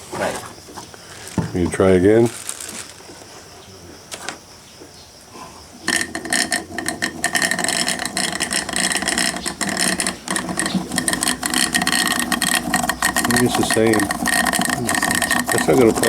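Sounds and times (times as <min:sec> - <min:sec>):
water pump rattling: 0:05.8 - 0:16.0.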